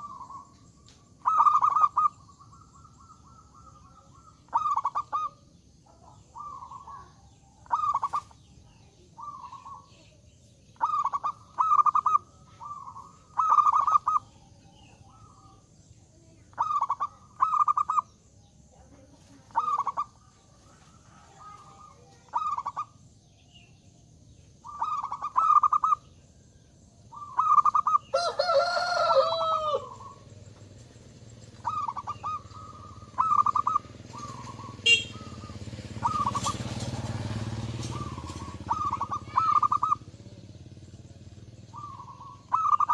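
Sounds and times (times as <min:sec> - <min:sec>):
dove cooing: 0:00.0 - 0:23.0, 0:24.6 - 0:42.9
rooster crowing: 0:28.1 - 0:30.2.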